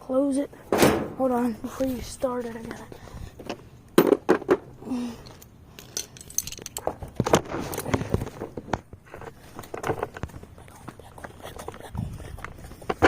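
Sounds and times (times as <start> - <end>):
metal hand tools clinking: 5.2 - 6.9.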